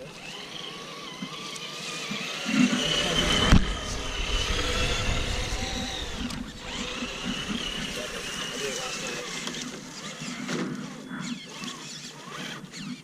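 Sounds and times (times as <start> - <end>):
toy car motor whining: 0.0 - 13.0
low rumble: 2.8 - 9.8.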